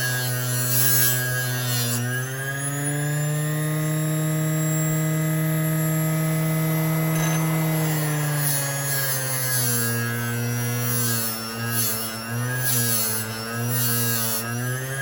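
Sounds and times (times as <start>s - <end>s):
power tool motor whining: 0.0s - 15.0s.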